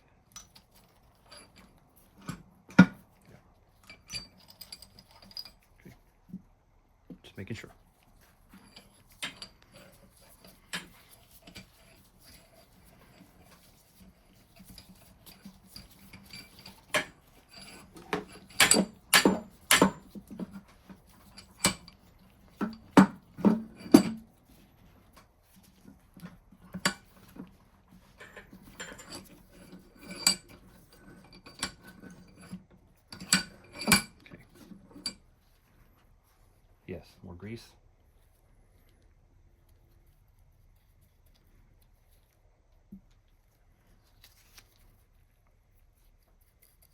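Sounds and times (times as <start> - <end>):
metal vise parts clinking: 0.3 - 3.0, 3.8 - 5.7, 8.5 - 24.3, 26.7 - 35.2.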